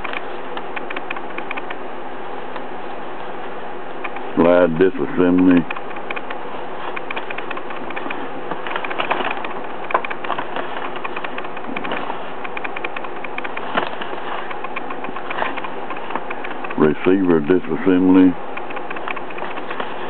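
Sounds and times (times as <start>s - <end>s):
pages turning and rustling: 5.4s - 16.9s, 18.6s - 20.0s.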